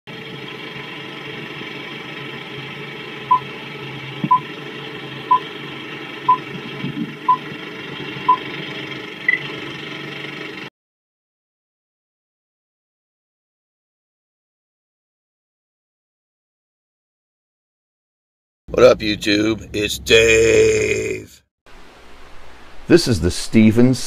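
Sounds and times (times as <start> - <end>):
countdown beeps: 3.3 - 3.5, 4.2 - 4.4, 6.3 - 6.5.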